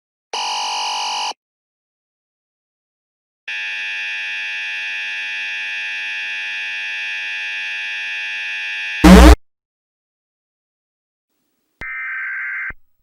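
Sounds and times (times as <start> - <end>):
harsh electronic buzzer tone: 3.5 - 9.4
loud distorted noise blast: 9.0 - 9.4.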